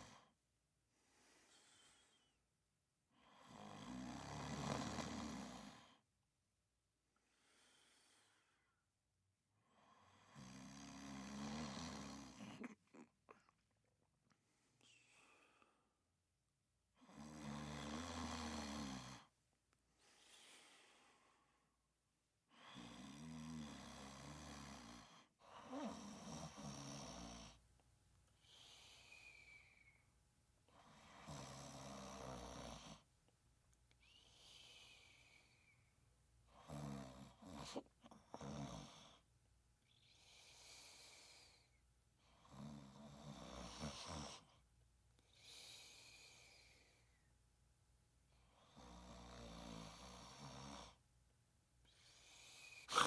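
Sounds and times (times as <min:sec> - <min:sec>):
faint high whistling breath: 0:01.0 - 0:02.5, 0:28.4 - 0:30.1, 0:34.0 - 0:36.0
rattling snore: 0:52.8 - 0:53.0.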